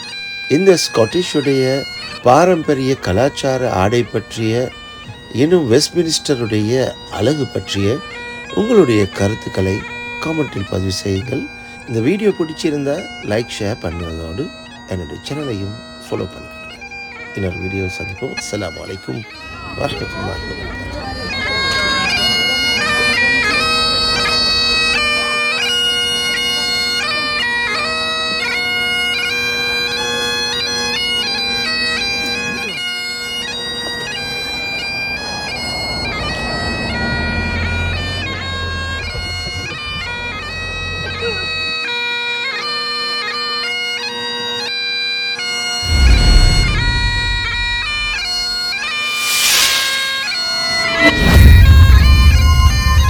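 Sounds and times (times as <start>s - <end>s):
bagpipe melody: 0.0s - 53.0s
loud rushing noise: 45.8s - 53.0s.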